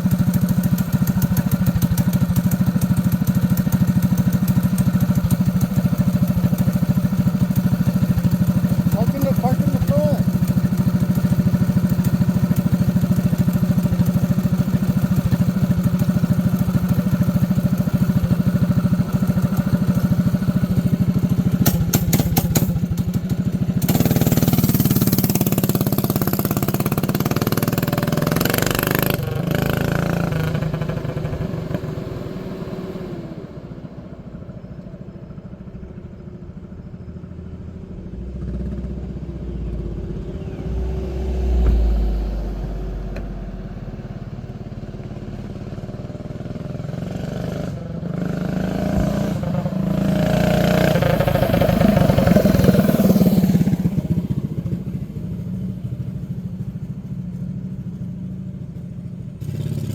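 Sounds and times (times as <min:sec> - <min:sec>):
mini bike engine running: 0:00.0 - 0:31.9, 0:46.0 - 0:59.9
low rumble: 0:33.4 - 0:46.0.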